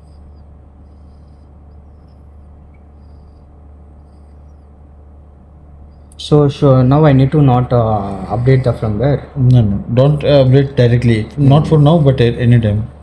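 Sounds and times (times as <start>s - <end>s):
high-pitched chirps: 0.0s - 7.2s
low background hum: 0.0s - 13.0s.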